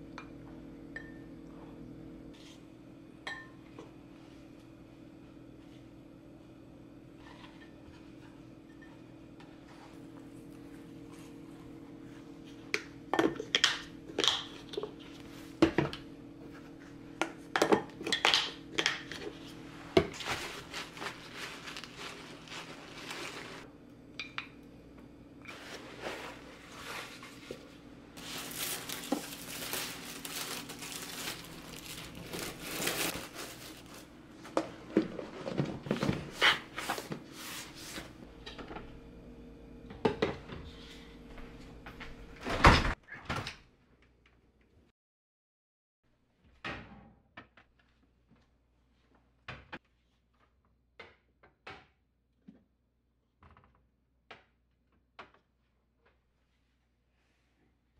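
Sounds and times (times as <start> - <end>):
plastic wrap crinkling: 20.1 - 23.6, 28.2 - 34.2.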